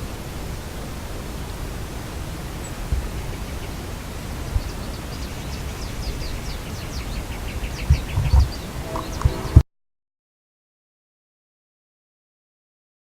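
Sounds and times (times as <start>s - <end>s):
small bird singing: 2.5s - 9.6s
outdoor rushing noise: 7.9s - 9.6s
soft thumps: 7.9s - 9.6s.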